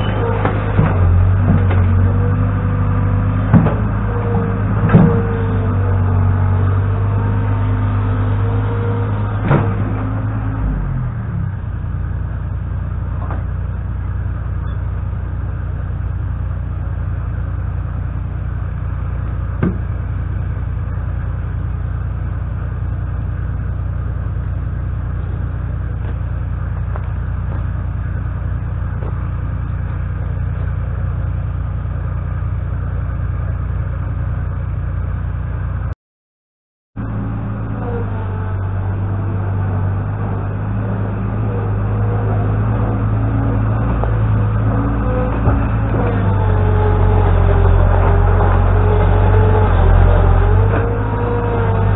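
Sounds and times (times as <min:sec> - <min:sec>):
loader engine running: 0:00.0 - 0:36.0, 0:37.0 - 0:51.9
single knock: 0:19.6 - 0:19.8.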